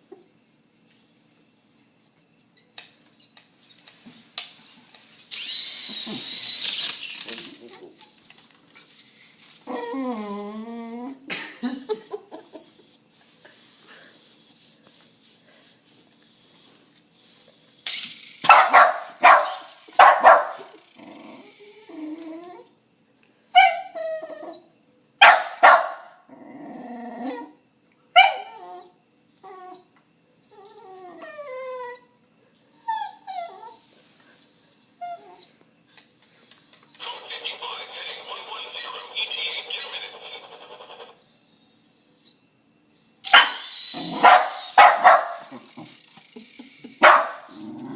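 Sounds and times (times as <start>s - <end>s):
dog barking and yipping: 18.4s - 20.8s, 23.6s - 24.0s, 25.2s - 26.2s, 28.2s - 28.5s, 43.2s - 45.7s, 47.0s - 47.6s.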